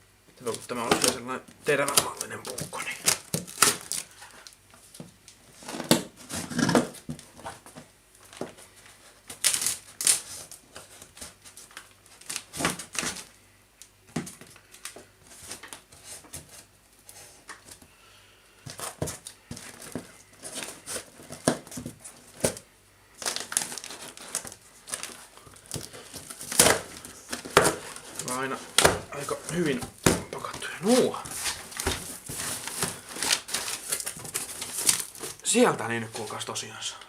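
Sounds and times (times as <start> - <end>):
cardboard box being torn open: 5.7 - 7.0.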